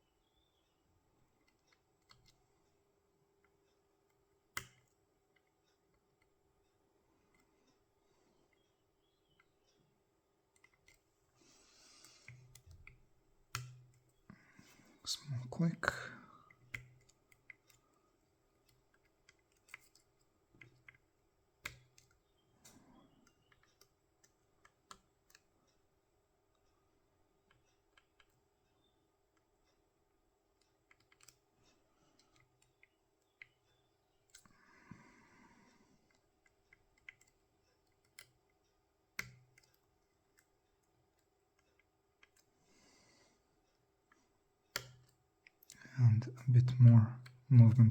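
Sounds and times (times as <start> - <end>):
metallic clicks of lock pick: 30.9 - 31.4.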